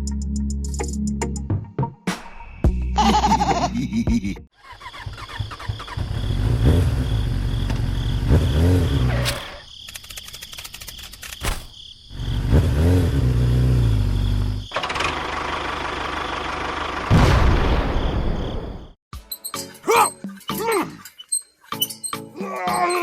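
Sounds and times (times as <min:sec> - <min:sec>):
engine revving: 0:04.8 - 0:09.6, 0:12.1 - 0:17.2.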